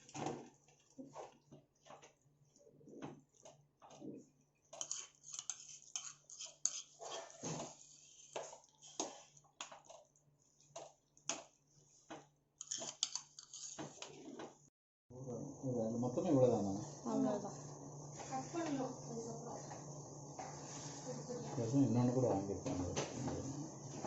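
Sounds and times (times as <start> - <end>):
low steady hum: 15.1 - 24.0.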